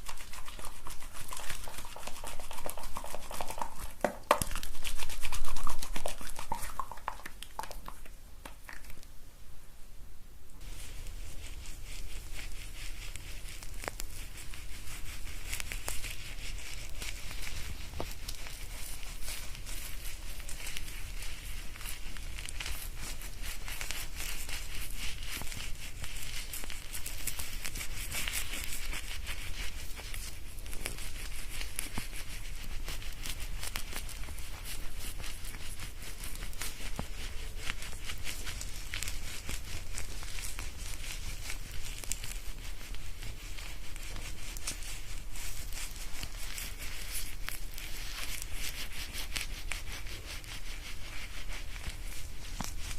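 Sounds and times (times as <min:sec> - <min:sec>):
fingers lathering wet hair: 0:00.0 - 0:09.1, 0:10.6 - 0:52.9.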